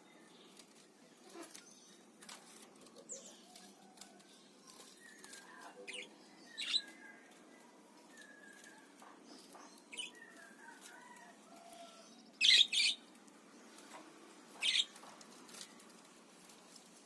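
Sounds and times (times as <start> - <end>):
parakeets warbling chirps: 5.3 - 7.0, 9.9 - 10.2, 12.4 - 13.1, 14.6 - 15.0.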